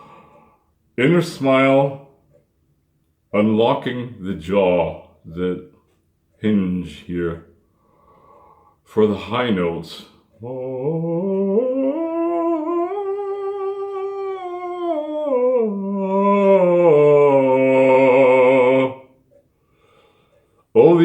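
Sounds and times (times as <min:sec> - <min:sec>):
man singing vocal exercise: 0:08.9 - 0:19.2, 0:20.8 - 0:21.0.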